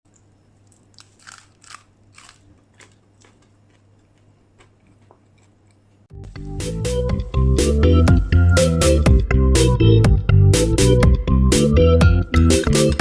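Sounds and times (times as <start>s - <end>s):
crunchy chewing of fried food: 0.1s - 6.1s
music: 6.1s - 13.0s.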